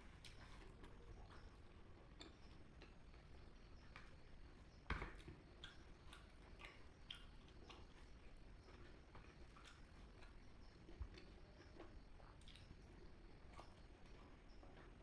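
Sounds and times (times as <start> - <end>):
chewing and mouth clicks: 5.6 - 15.0.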